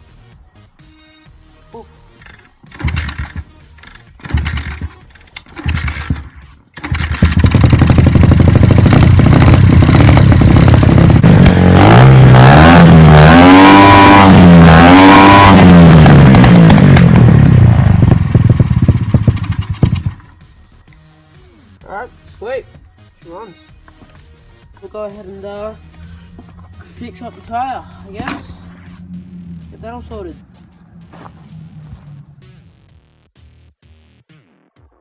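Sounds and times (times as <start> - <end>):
dirt bike engine revving: 2.2 - 20.2, 25.6 - 33.0.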